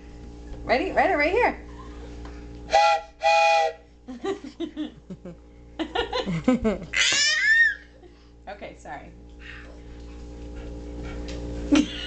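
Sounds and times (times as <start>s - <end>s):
toy train whistle toots: 2.7s - 3.8s.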